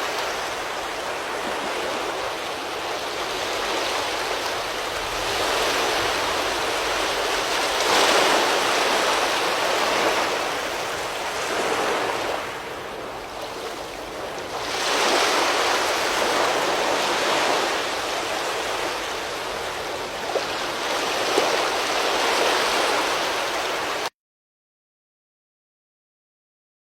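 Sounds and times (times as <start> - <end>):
storm wind gusting: 2.8 - 20.0.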